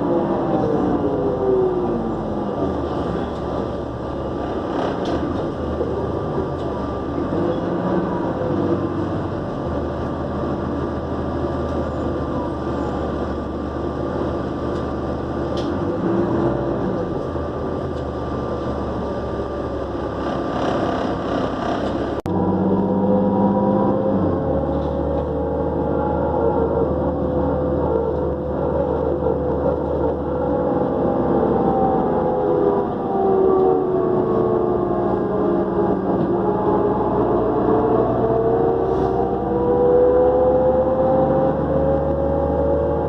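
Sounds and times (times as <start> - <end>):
bus engine drone: 0.0 - 43.0
road noise: 0.0 - 43.0
turbocharger whine: 16.8 - 43.0.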